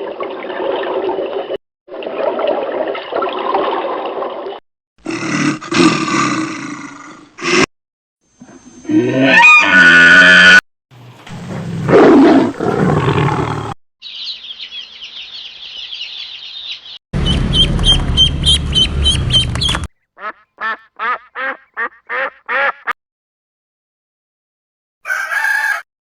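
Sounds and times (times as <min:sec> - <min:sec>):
high chirping bird calls: 0:14.0 - 0:22.0.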